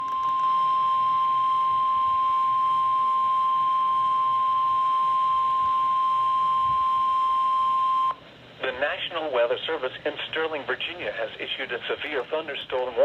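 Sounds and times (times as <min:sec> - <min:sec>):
steady high-pitched alarm tone: 0:00.0 - 0:08.2.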